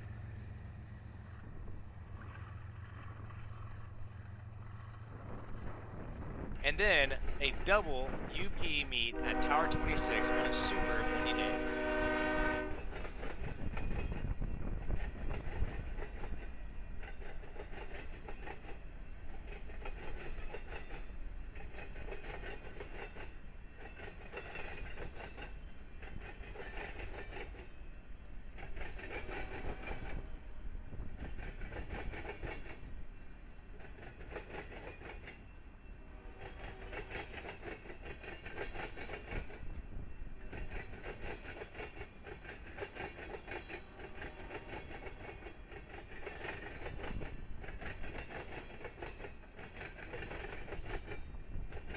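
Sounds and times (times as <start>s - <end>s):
train wheels clattering: 36.4s - 39.8s, 40.4s - 51.9s.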